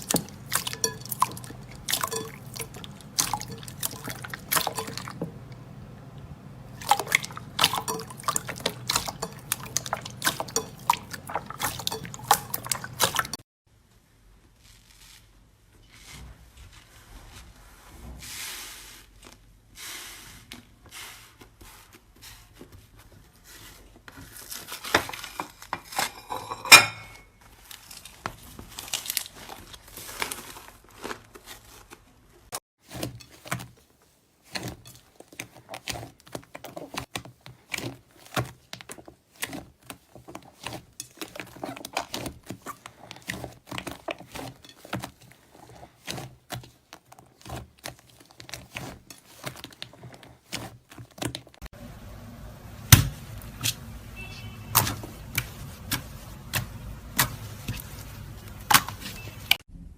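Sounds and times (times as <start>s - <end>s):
slime squishing: 0.0s - 5.7s, 6.6s - 13.4s, 27.5s - 32.0s, 32.8s - 51.7s, 52.9s - 59.5s.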